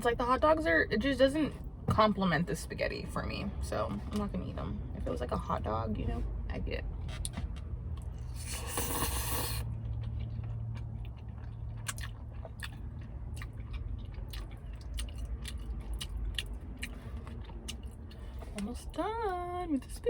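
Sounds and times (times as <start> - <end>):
low steady hum: 0.0 - 20.0
close-up chewing with mouth clicks: 7.1 - 18.8.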